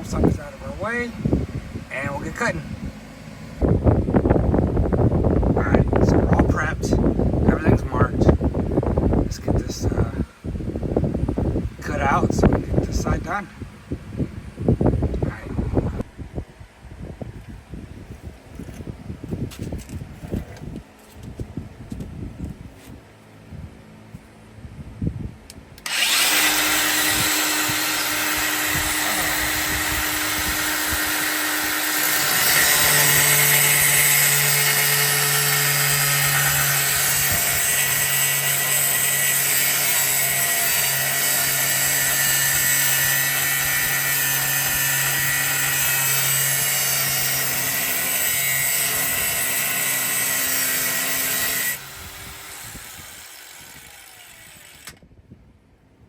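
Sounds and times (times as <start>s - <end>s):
power tool cutting steel: 25.8s - 55.1s.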